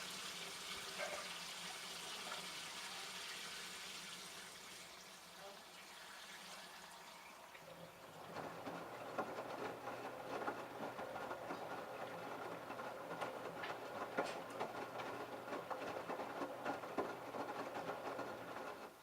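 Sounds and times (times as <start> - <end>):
washing machine drum turning: 8.2 - 19.0
clicks and knocks against drum: 8.3 - 18.9.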